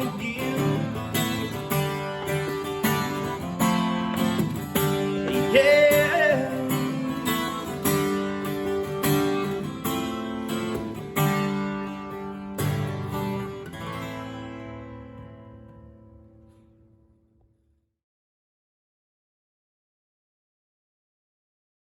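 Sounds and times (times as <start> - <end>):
acoustic guitar strumming: 0.0 - 17.4.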